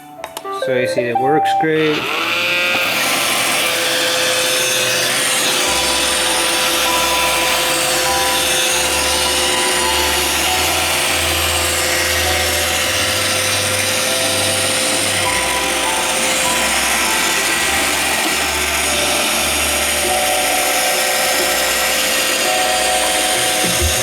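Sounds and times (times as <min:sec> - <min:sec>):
robot vacuum whirring: 0:01.8 - 0:24.0.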